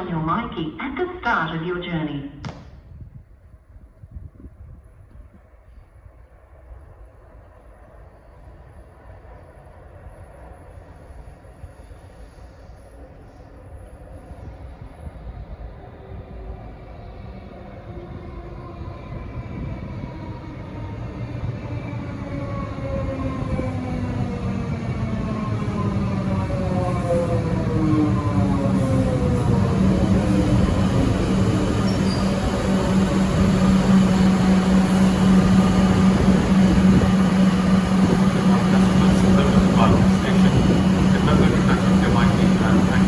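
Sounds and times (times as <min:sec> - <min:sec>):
electric train rumble: 0:03.0 - 0:43.0
train whining tones: 0:25.0 - 0:43.0
dense rumbling: 0:29.2 - 0:43.0.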